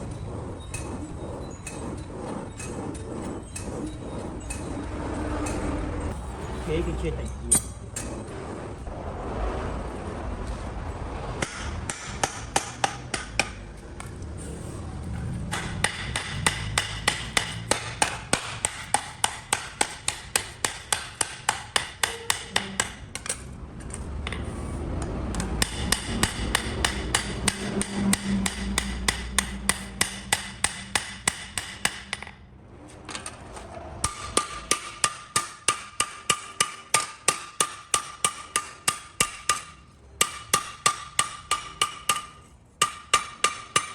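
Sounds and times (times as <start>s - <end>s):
hammer striking metal on anvil: 15.5s - 23.4s, 25.4s - 32.4s, 34.0s - 43.9s.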